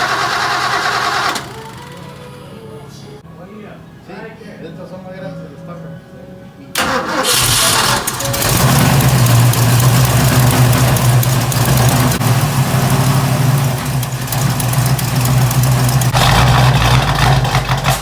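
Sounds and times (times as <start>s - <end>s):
car engine running loud: 6.8s - 18.0s.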